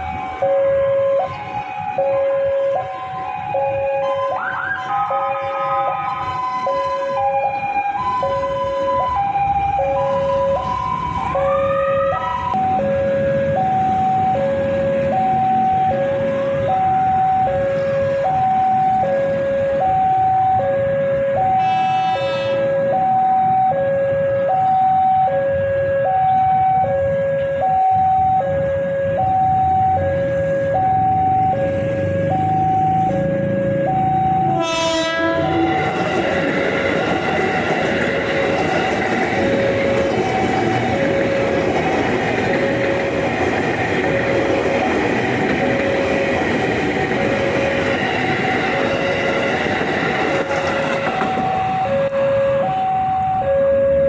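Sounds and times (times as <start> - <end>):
train rumble and wheel noise: 0.0 - 54.0
two-tone electronic warning alarm: 0.0 - 54.0
train horn: 3.9 - 7.6, 21.5 - 22.8, 34.5 - 36.1.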